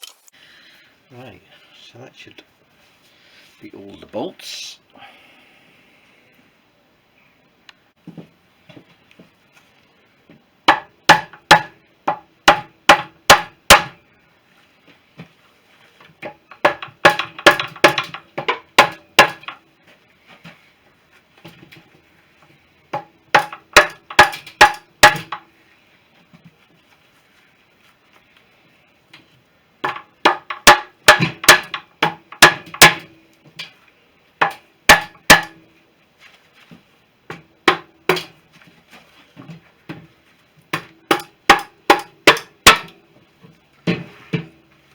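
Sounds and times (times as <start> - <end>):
hammer striking metal: 34.4 - 35.6, 41.1 - 42.9.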